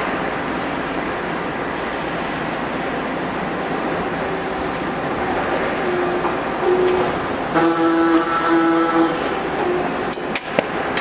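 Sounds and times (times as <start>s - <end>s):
circular saw machine running: 2.9s - 11.0s.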